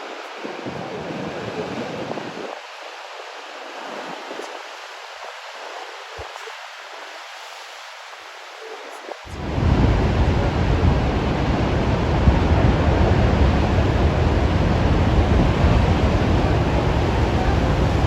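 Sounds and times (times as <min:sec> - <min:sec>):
heavy ocean surf rushing: 0:00.0 - 0:18.0
wind buffeting microphone: 0:00.1 - 0:02.8, 0:09.2 - 0:18.0.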